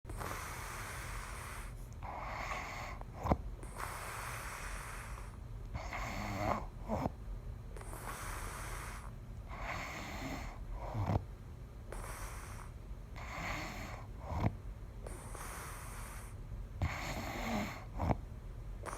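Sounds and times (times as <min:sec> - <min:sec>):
person snoring: 0:16.8 - 0:18.2.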